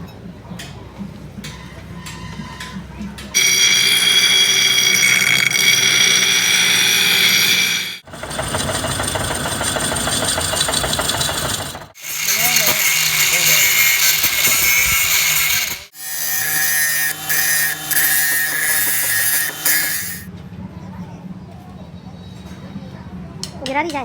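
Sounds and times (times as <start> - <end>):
pulsing machine noise: 3.4 - 15.9
power grinder whining: 3.4 - 20.3.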